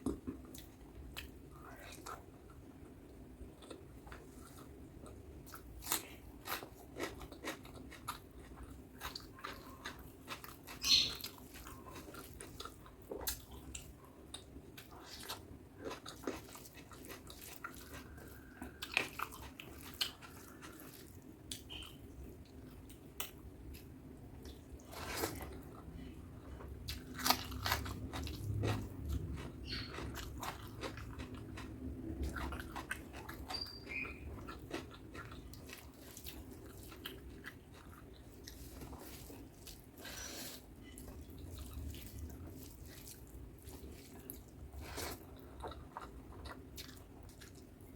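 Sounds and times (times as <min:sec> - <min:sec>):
wet chewing mouth sounds: 0:26.9 - 0:47.9.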